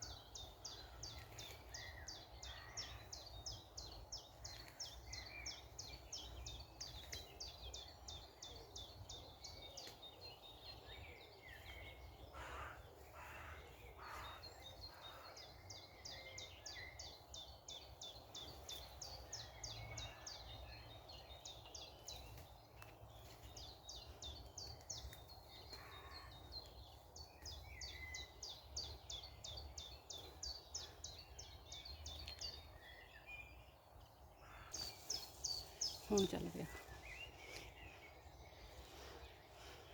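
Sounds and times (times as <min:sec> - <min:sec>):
small birds singing: 0:00.0 - 0:39.9.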